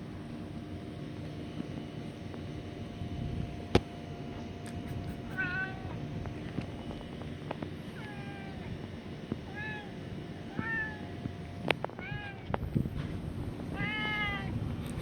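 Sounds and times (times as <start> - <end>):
low background hum: 0.0 - 15.0
cat meowing: 5.2 - 6.1, 7.9 - 11.2, 11.9 - 12.6, 13.7 - 14.6.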